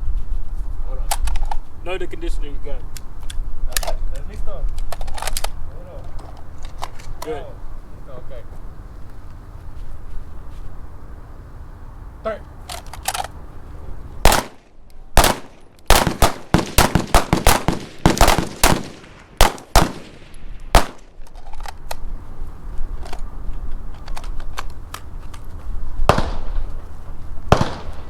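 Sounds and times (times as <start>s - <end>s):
gunshots: 14.2s - 21.1s, 26.1s - 26.7s, 27.5s - 28.0s.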